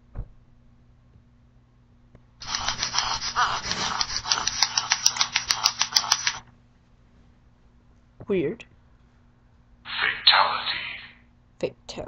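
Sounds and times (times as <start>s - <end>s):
scratchy noise with sharp clicks: 2.4s - 6.4s.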